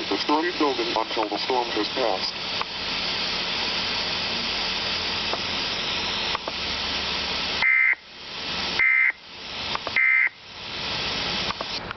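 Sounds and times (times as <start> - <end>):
radio static hiss: 0.0 - 11.9
short data tone bursts: 7.6 - 8.0, 8.8 - 9.2, 9.9 - 10.4.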